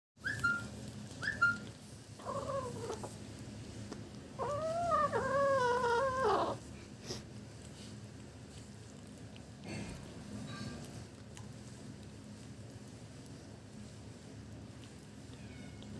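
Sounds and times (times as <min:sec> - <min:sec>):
kitten mewing: 0:04.4 - 0:06.7.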